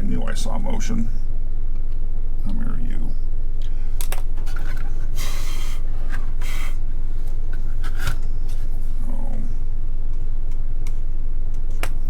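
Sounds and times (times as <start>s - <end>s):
low electrical hum: 0.0s - 12.0s
short hissing bursts: 5.1s - 5.8s, 6.4s - 6.8s.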